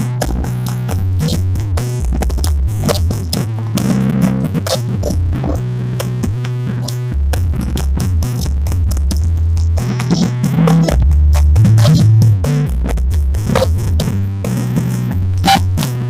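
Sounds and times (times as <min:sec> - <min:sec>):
electronic dance music: 0:07.8 - 0:15.8.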